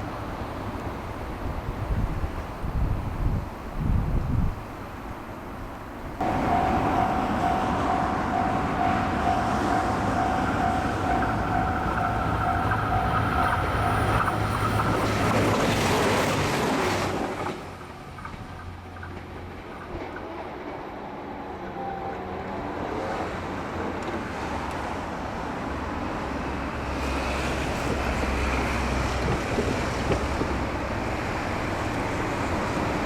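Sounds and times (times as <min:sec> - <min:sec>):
crossing warning bell dinging: 0:06.2 - 0:15.5
train wheels rushing on rails: 0:06.2 - 0:33.0.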